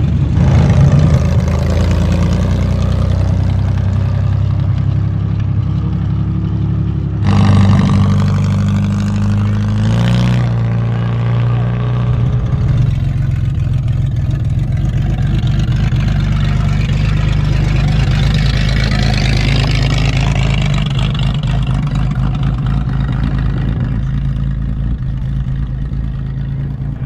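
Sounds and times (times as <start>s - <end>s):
engine running: 0.0s - 27.0s
high rushing noise: 0.3s - 2.4s.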